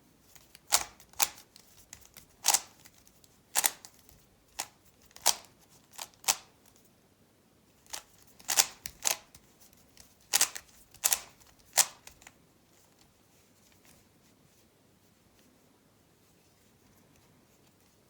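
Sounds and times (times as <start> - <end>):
plastic puzzle cube clacks: 0.4 - 6.8, 7.8 - 12.4.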